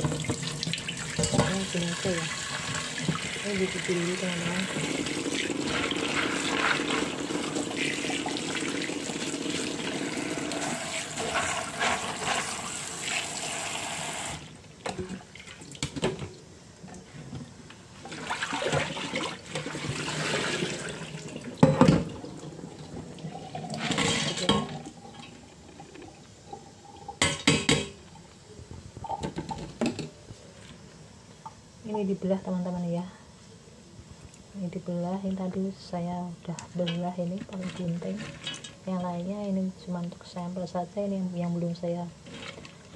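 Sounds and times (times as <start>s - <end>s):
kitchen tap running: 0.0s - 14.5s, 18.0s - 25.8s.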